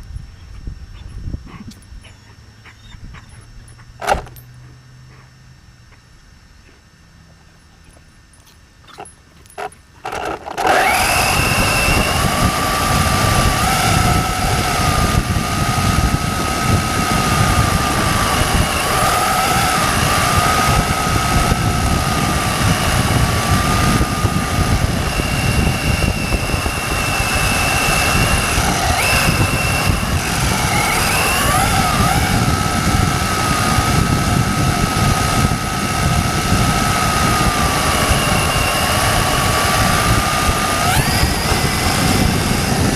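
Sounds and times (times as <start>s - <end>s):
rc car motor whine: 0.0s - 6.3s, 7.3s - 42.9s.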